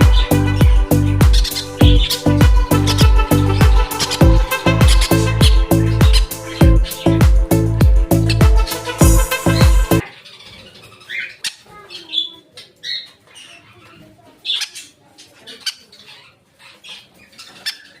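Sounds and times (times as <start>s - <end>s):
music with a steady beat: 0.0s - 10.0s
parrot chicks squawking and chirping: 0.0s - 18.0s.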